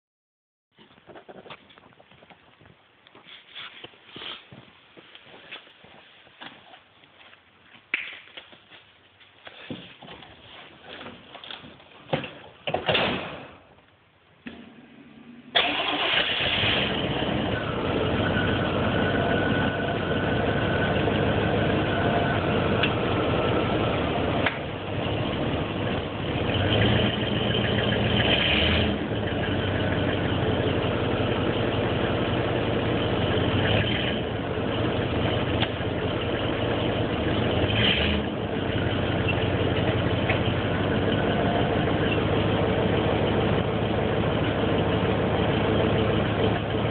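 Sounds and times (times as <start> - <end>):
engine cranking and starting: 14.5 - 18.8
engine running: 14.5 - 46.9.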